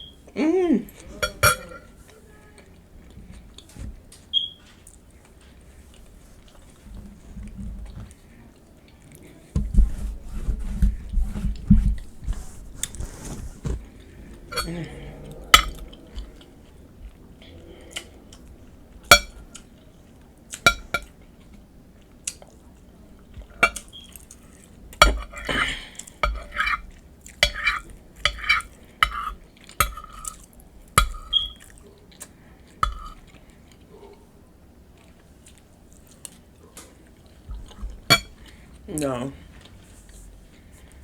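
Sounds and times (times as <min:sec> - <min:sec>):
utensil clinking on plate: 0:01.2 - 0:01.9, 0:14.5 - 0:16.3, 0:19.1 - 0:19.5, 0:20.7 - 0:21.1, 0:23.6 - 0:24.0, 0:25.0 - 0:26.8, 0:27.4 - 0:30.4, 0:32.8 - 0:33.2, 0:38.1 - 0:38.4.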